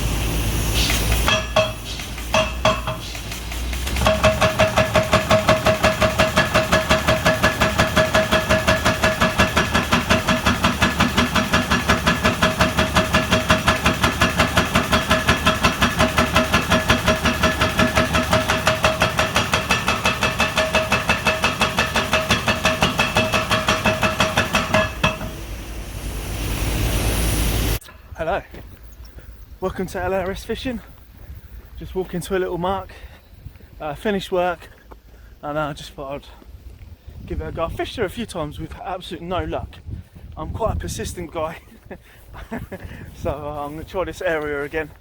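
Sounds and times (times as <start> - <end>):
pile driver hammering: 0.9 - 25.5.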